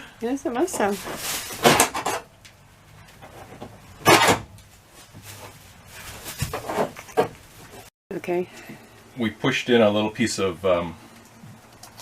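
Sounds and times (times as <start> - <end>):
scraping rubbing handling noises: 3.2 - 7.9.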